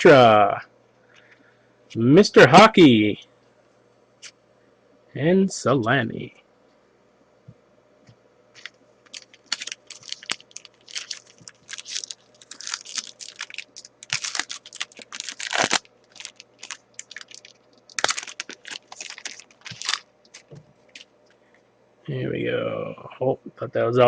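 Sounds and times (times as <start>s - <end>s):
foil wrapper tearing and crinkling: 8.6s - 21.0s.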